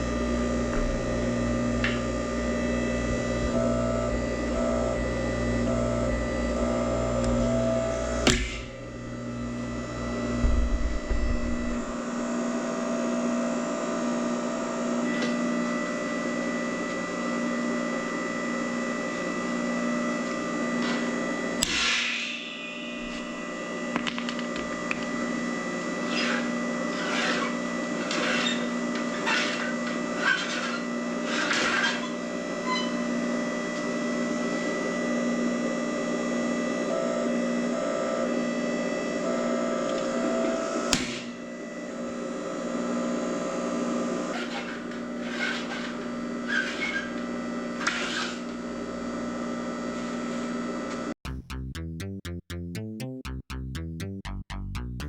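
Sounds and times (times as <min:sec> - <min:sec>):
power tool pulsing hum: 0:00.0 - 0:21.8.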